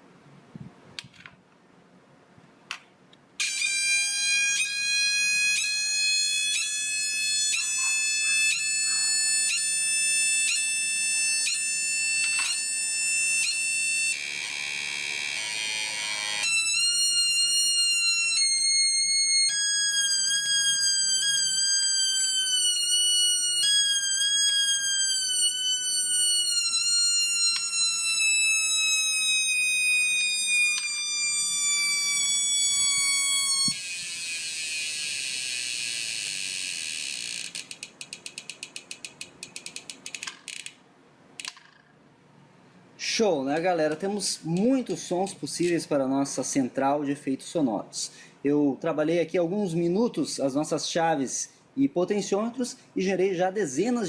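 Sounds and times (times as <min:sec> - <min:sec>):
harsh electronic buzzing tone: 0:03.4 - 0:40.6.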